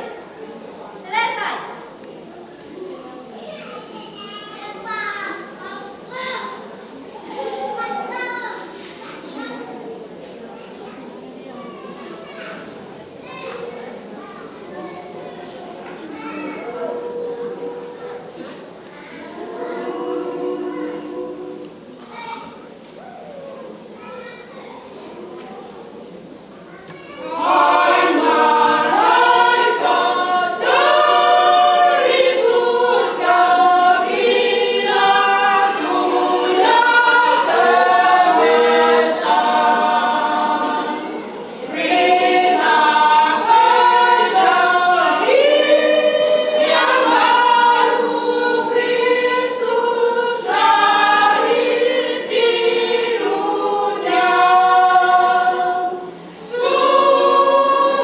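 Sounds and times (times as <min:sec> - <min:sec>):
women's choir singing: 0:16.7 - 0:22.0, 0:27.2 - 0:58.0.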